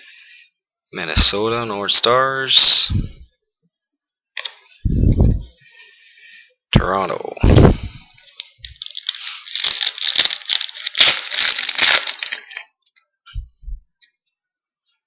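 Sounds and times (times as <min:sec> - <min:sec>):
foil wrapper crinkling and tearing: 0:08.1 - 0:12.9.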